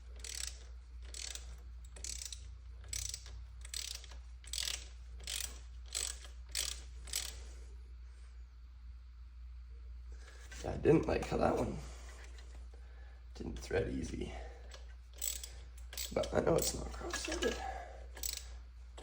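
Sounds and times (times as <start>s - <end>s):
hand ratchet clicking: 0.0s - 7.4s, 14.6s - 19.0s.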